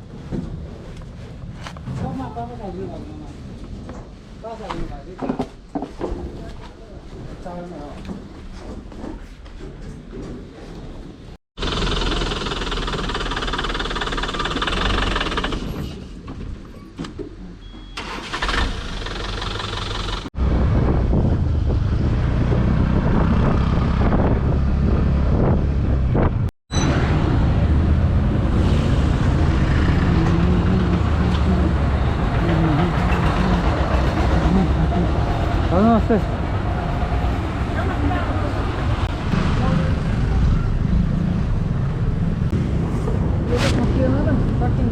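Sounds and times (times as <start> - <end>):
vehicle engine and road noise: 0.0 - 5.7, 10.0 - 44.9.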